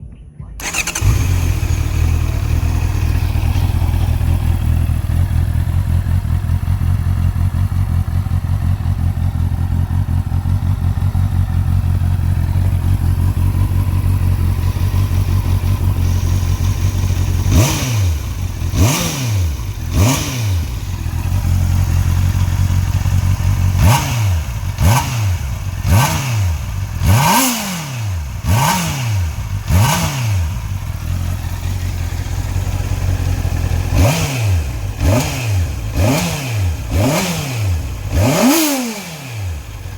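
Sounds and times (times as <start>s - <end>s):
motorcycle idling: 0.6s - 39.9s
motorcycle revving: 0.6s - 39.9s.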